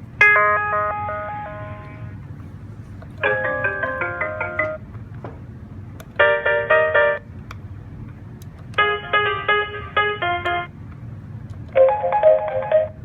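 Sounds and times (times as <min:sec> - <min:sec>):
phone ringtone melody: 0:00.3 - 0:02.1, 0:03.2 - 0:04.8, 0:11.8 - 0:13.0.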